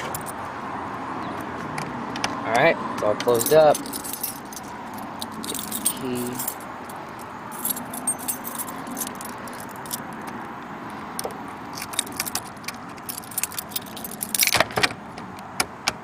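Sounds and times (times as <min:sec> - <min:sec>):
keys jangling: 0:00.0 - 0:00.4, 0:03.3 - 0:10.4, 0:11.1 - 0:14.8.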